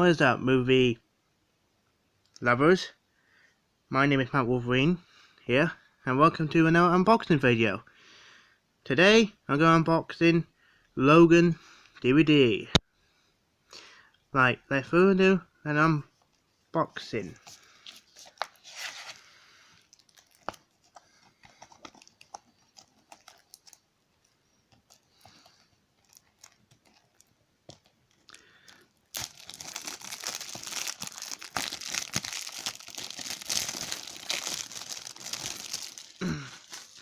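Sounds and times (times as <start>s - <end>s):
plastic wrap crackling and crinkling: 17.3s - 37.0s
small clicks and rustles: 19.8s - 28.8s.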